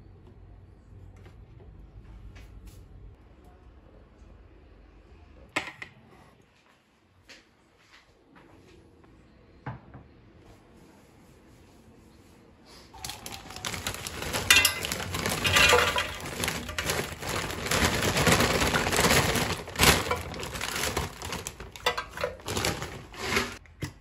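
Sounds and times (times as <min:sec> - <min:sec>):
dishes and cutlery clinking: 0:13.0 - 0:18.2, 0:19.0 - 0:23.6.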